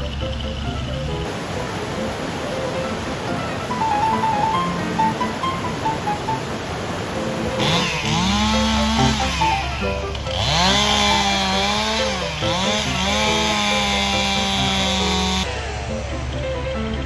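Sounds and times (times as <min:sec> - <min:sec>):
background music: 0:02.0 - 0:06.5, 0:07.2 - 0:17.0
chainsaw engine revving: 0:07.1 - 0:17.0.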